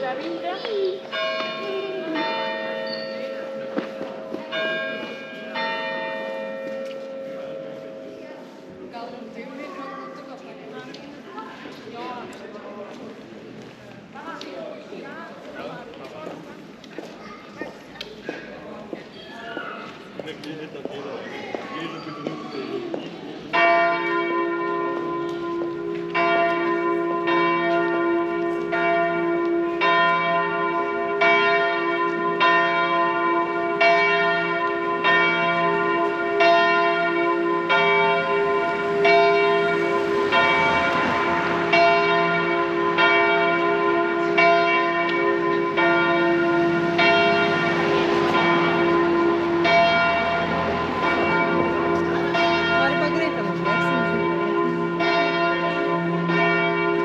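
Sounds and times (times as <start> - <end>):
church bells ringing: 0.0 - 13.0, 21.5 - 57.0
steady bell hum: 0.8 - 7.3.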